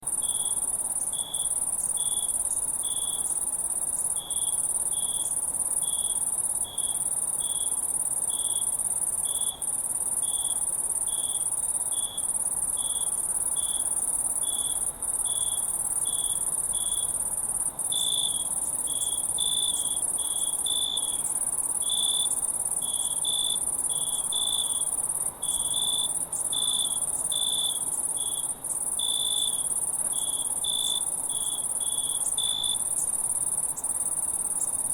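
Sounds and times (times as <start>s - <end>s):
crickets chirping: 0.0s - 34.9s
high-pitched cricket trill: 0.0s - 34.9s.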